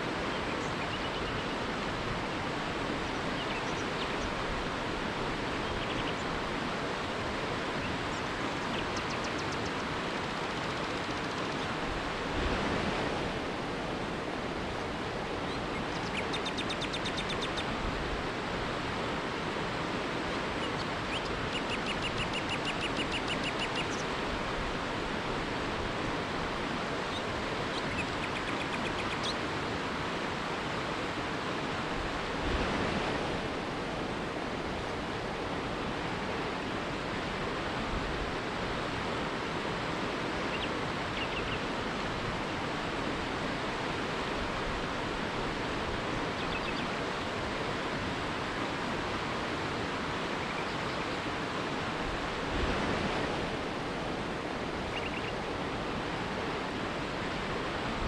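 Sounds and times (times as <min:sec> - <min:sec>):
faint bird chirps: 0:00.3 - 0:01.6, 0:15.5 - 0:17.7, 0:20.6 - 0:24.1, 0:40.5 - 0:41.7, 0:46.4 - 0:46.9, 0:54.8 - 0:55.4
river rapids rushing: 0:28.9 - 0:58.0.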